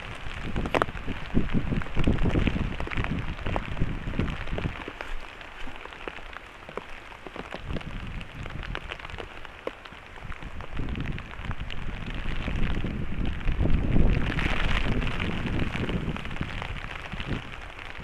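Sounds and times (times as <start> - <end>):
rain falling steadily: 0.0 - 18.0
raindrops ticking: 0.0 - 18.0.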